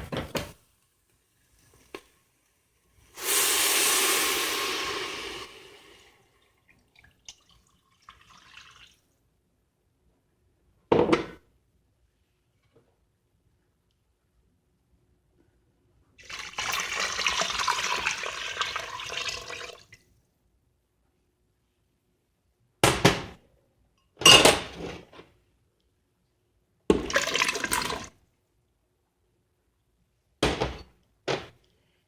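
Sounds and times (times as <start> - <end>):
liquid pouring into a pot: 1.4 - 9.1, 16.2 - 19.9, 26.9 - 28.1.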